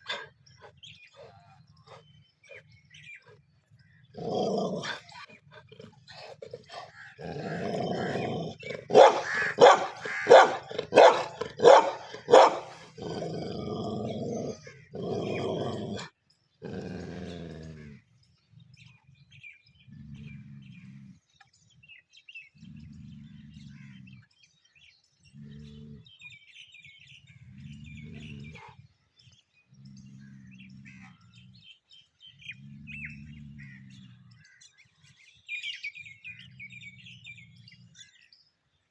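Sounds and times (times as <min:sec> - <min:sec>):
dogs snarling: 0:00.0 - 0:03.5, 0:04.1 - 0:18.0, 0:27.5 - 0:28.9
dogs growling: 0:00.0 - 0:26.4, 0:27.0 - 0:34.8, 0:36.0 - 0:38.4
birds chirping faintly: 0:00.0 - 0:38.9
dog barking: 0:08.8 - 0:13.0.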